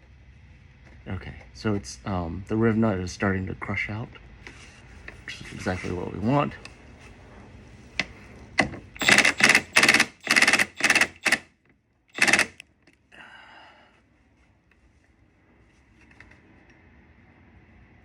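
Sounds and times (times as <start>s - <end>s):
impact wrench bursts: 9.0s - 11.4s, 12.2s - 12.6s.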